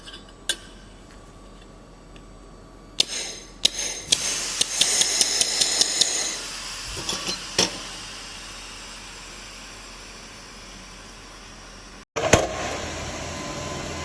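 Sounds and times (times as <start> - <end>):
hiss: 3.0 - 11.4.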